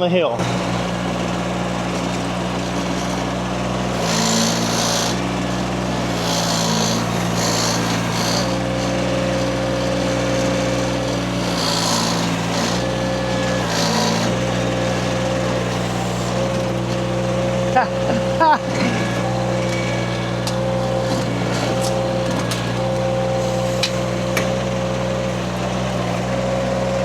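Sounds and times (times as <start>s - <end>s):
small engine running: 0.0s - 27.0s
hydraulic hiss: 21.0s - 24.5s.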